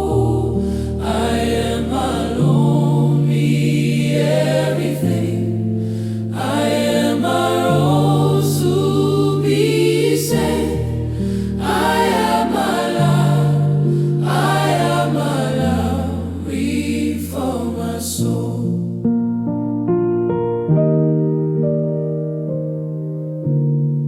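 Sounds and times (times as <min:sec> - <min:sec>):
gospel choir singing: 0:00.0 - 0:19.0.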